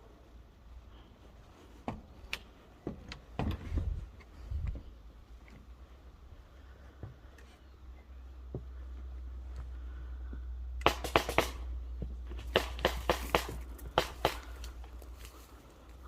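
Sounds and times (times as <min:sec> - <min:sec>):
sharp snaps in bursts: 0:10.8 - 0:11.7, 0:12.4 - 0:14.8.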